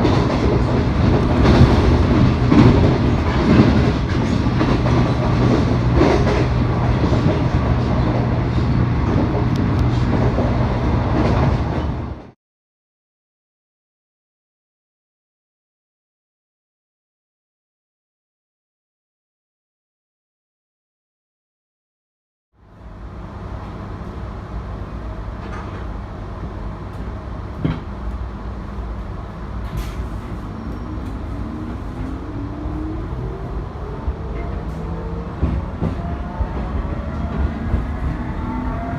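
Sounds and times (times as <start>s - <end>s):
clacks over rail joints: 0.0s - 12.4s, 27.6s - 27.9s, 34.3s - 38.3s
electric train low hum: 0.0s - 12.4s, 22.6s - 38.9s
wheels on rail: 0.0s - 12.4s, 22.7s - 38.9s.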